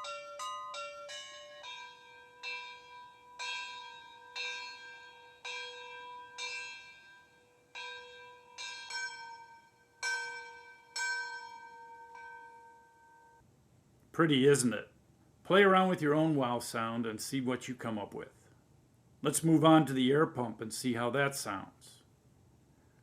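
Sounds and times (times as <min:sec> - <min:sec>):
bell strikes playing tune: 0:00.0 - 0:13.4.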